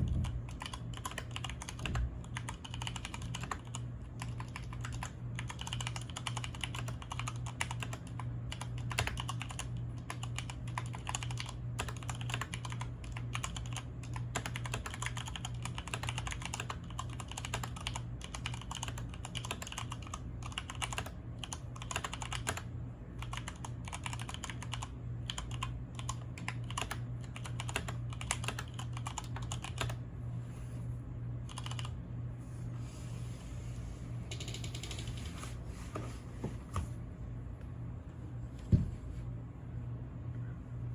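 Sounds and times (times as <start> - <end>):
mechanical keyboard typing: 0.0 - 22.6, 23.2 - 30.0, 31.5 - 31.9, 34.3 - 35.4.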